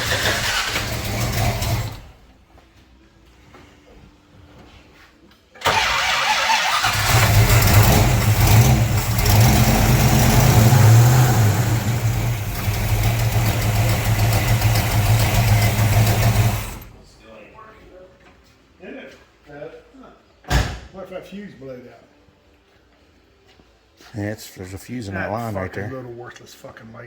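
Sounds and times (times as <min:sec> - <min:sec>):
car engine starting and running: 0:00.0 - 0:02.2, 0:05.6 - 0:17.0.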